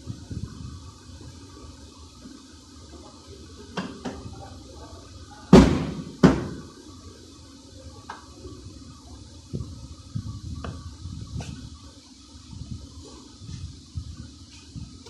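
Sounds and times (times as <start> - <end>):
loud bangs on car bodywork: 5.5 - 6.6.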